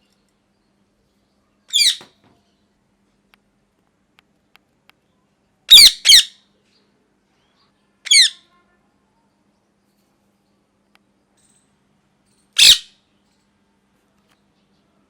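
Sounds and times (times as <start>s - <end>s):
parrot squawking: 1.7s - 2.0s, 5.7s - 6.4s, 8.1s - 8.4s, 12.6s - 12.9s.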